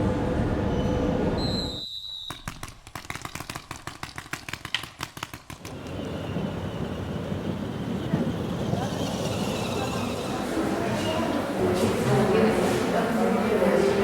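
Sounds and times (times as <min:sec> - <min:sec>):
sharp cracks: 0:02.3 - 0:05.8.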